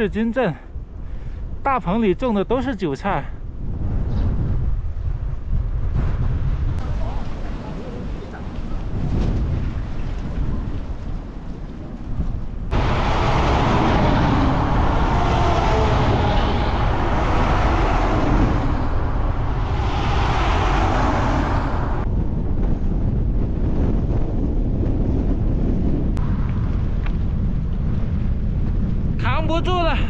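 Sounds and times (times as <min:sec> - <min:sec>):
gale buffeting microphone: 0:00.0 - 0:30.0
hissing rush of wind: 0:12.7 - 0:24.1.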